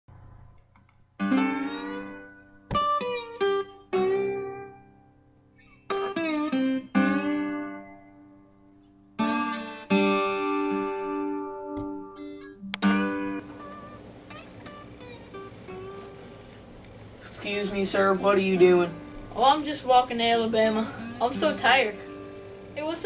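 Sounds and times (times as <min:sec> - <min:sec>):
guitar chords strummed: 0:01.2 - 0:23.0.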